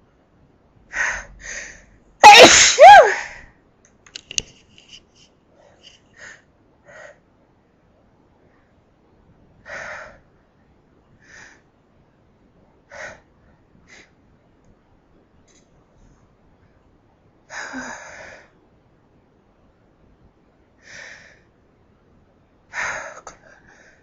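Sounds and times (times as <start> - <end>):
woman sneezing: 2.2 - 3.3.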